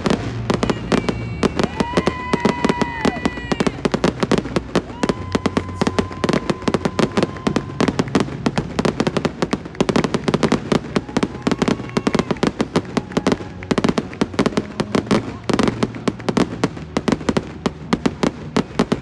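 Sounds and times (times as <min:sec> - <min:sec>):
fireworks cracking bangs: 0:00.0 - 0:19.0
faint firework whistle: 0:00.1 - 0:09.1.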